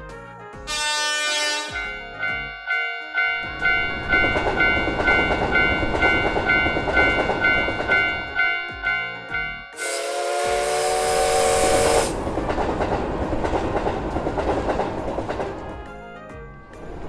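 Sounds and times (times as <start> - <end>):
train rumble: 0.6 - 17.0
railroad crossing bell dinging: 0.7 - 12.5.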